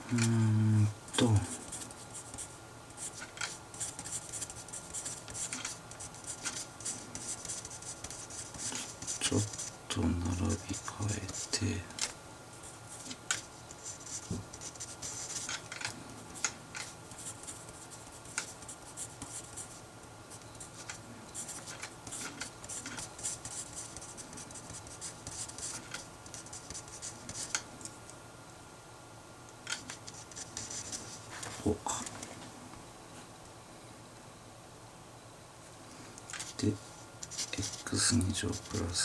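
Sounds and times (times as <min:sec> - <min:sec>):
pen scratching on paper: 0:01.6 - 0:09.8, 0:20.3 - 0:27.6, 0:29.7 - 0:31.1, 0:37.2 - 0:38.9.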